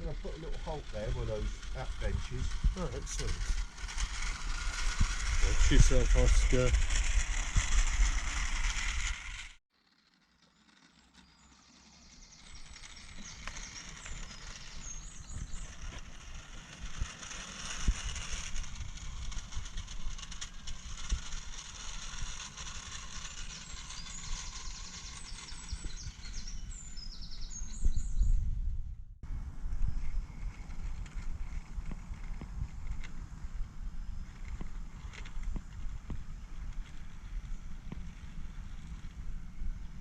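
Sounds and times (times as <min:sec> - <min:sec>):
wind rumbling on microphone: 0:00.0 - 0:09.5, 0:13.3 - 0:40.0
small ticks: 0:12.7 - 0:26.4.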